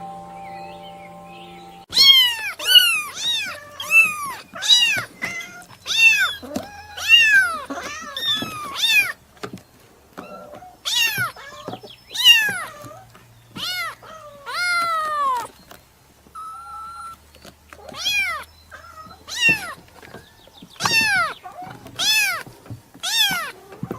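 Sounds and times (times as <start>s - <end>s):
kitten meowing: 1.9s - 9.1s, 19.3s - 19.8s, 20.8s - 21.3s.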